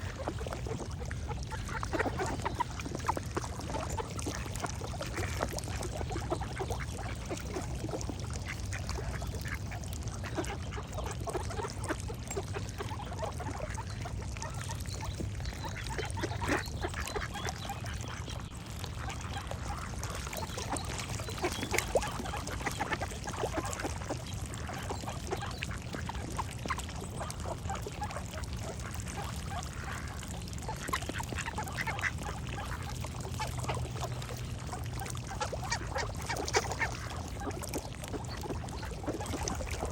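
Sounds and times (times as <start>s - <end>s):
ducks quacking: 0.0s - 39.9s
birds singing: 20.3s - 22.4s.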